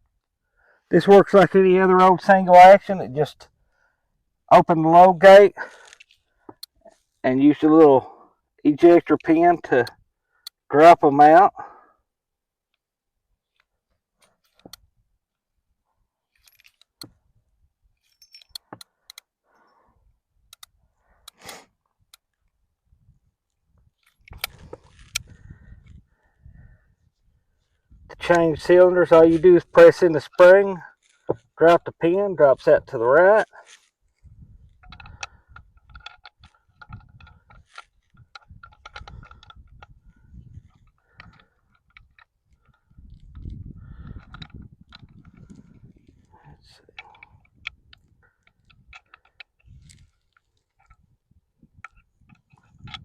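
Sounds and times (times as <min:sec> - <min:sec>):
small metallic clicks and clinks: 0:16.3 - 0:17.2, 0:18.0 - 0:19.3, 0:34.7 - 0:45.7, 0:46.9 - 0:51.0.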